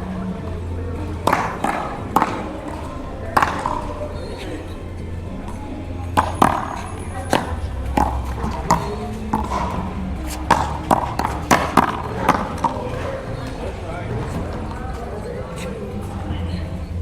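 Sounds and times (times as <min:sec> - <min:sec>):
paddles striking rubber ball: 0:01.0 - 0:04.4, 0:05.0 - 0:15.1.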